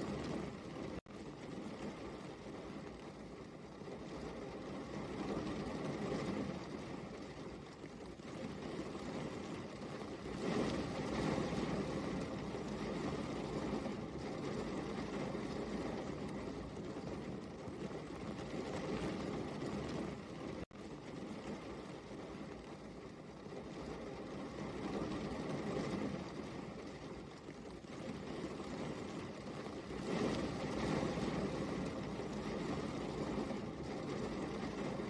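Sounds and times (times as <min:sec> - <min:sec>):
steady rain: 0:00.0 - 0:35.0.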